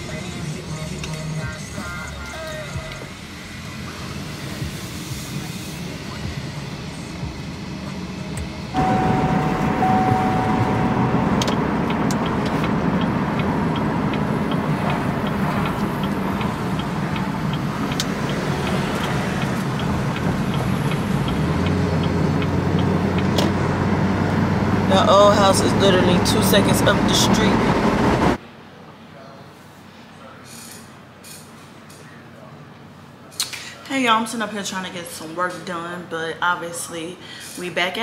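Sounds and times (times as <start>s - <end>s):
car interior road noise: 2.8s - 28.5s
turn signal ticking: 8.4s - 28.4s.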